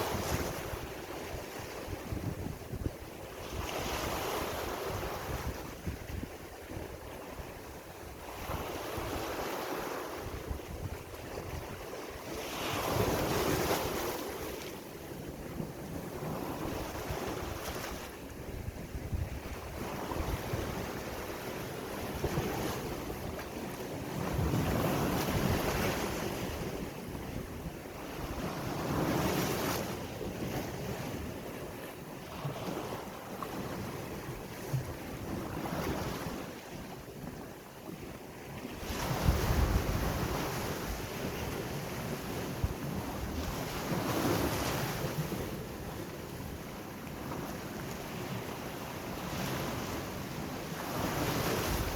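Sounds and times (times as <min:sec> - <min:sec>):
wind buffeting microphone: 0:00.0 - 0:14.6, 0:15.2 - 0:31.6, 0:38.7 - 0:46.1
sea waves washing ashore: 0:00.0 - 0:51.9.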